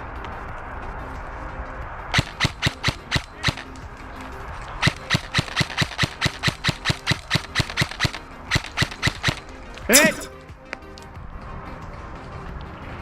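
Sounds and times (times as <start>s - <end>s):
airsoft gun rapid shots: 2.2s - 3.7s, 4.8s - 9.4s.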